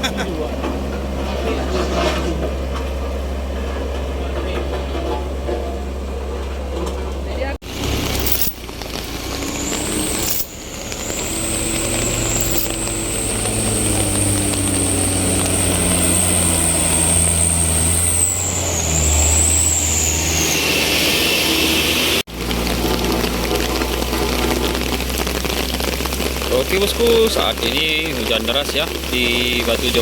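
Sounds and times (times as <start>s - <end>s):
heavy truck engine running: 0.0s - 30.0s
thin high whine: 9.4s - 22.2s.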